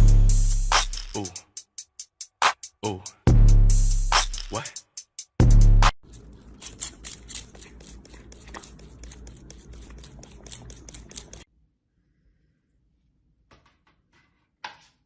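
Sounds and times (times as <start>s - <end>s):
rapid clicking and scratching: 6.0s - 11.5s.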